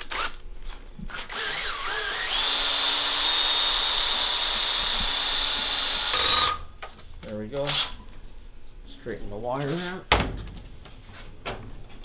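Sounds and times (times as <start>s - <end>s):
power drill running: 1.1s - 6.7s.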